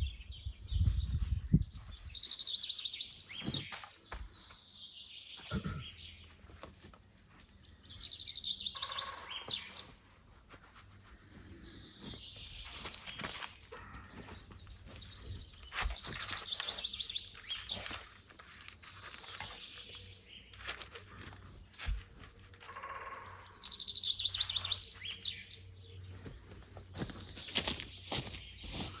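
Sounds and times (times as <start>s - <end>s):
songbirds singing: 0.0s - 29.0s
high trilled bird phrases: 8.2s - 9.6s.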